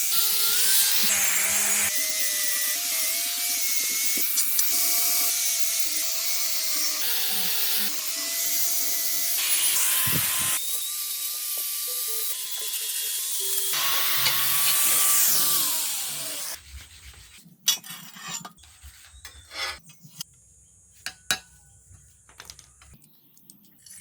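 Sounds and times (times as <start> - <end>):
power tool rasping with motor whine: 0.0 - 16.6.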